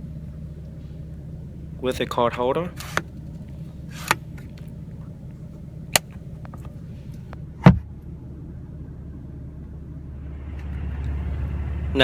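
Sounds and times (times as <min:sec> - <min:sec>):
steady low hum: 0:00.0 - 0:10.3, 0:11.0 - 0:12.0
sun visor click: 0:02.8 - 0:07.4.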